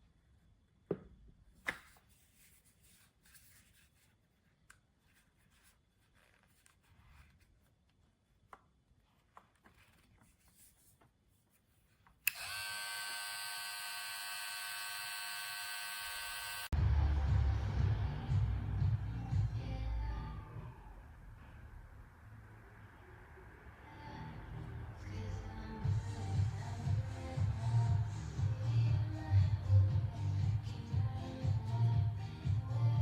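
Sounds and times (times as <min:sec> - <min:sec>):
hair clipper buzzing: 0:12.3 - 0:16.7.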